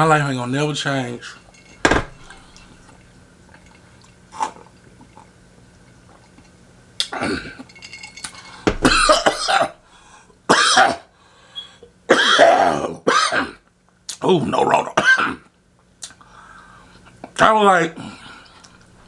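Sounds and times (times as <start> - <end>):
man clearing his throat: 8.8 - 9.8, 12.1 - 13.6, 14.9 - 15.5
man coughing: 8.8 - 9.8, 10.5 - 11.1, 12.1 - 13.6, 15.0 - 15.5.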